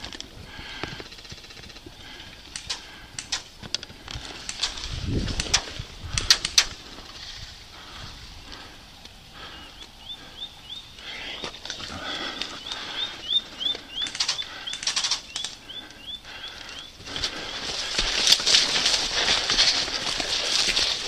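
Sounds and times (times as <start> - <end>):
sharp clicks: 2.5 - 6.8, 12.4 - 16.0
bird chirping: 7.8 - 17.9.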